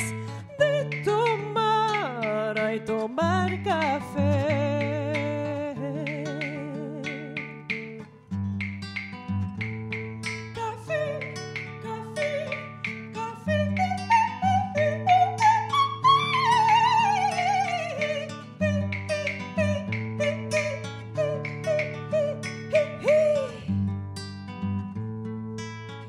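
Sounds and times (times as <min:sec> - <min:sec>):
wavering melody line: 0:00.0 - 0:08.0, 0:08.6 - 0:23.7
plucked guitar strums: 0:00.0 - 0:26.0.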